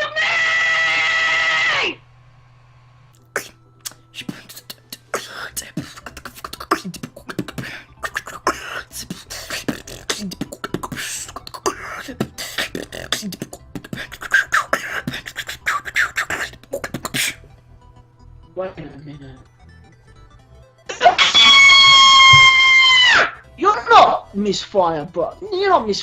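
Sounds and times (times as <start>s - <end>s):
human beatboxing: 3.4s - 17.4s.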